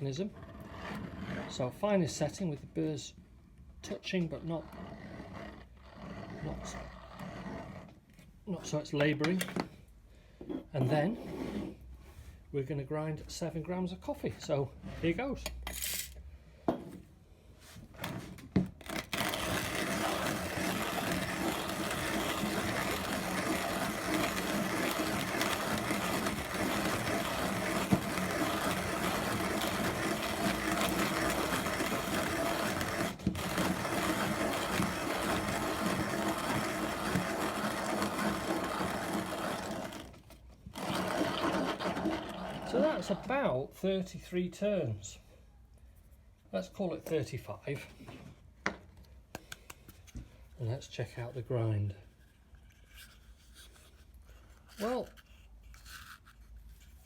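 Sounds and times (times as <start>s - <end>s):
manual coffee grinder grinding: 4.0s - 8.0s, 18.0s - 43.5s.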